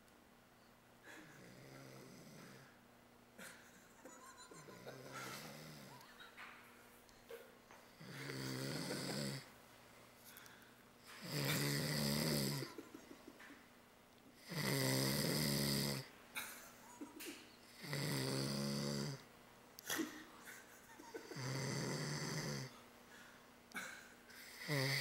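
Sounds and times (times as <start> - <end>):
man snoring: 1.2 - 2.8, 4.8 - 5.9, 7.9 - 9.5, 11.1 - 12.8, 14.4 - 16.1, 17.7 - 19.2, 21.2 - 22.8, 24.3 - 25.0.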